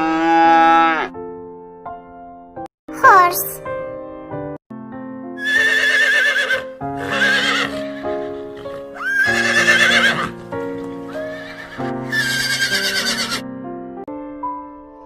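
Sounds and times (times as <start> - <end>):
horse whinnying: 0.0 - 1.1, 5.4 - 13.4
gentle background music: 0.5 - 15.0.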